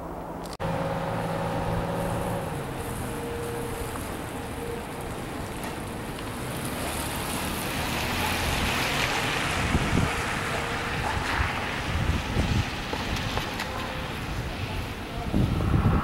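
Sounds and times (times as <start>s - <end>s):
faint engine hum: 0.2s - 12.5s.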